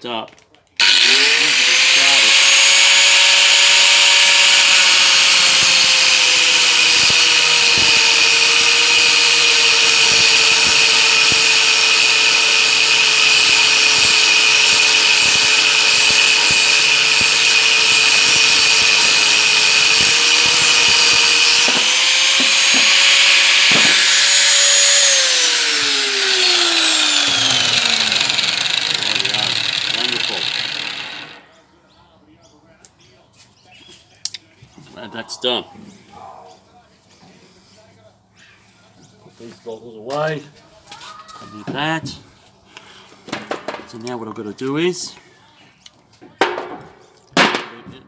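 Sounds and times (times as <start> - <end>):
angle grinder cutting metal: 0.8 - 31.5
grinder winding down: 0.8 - 31.5.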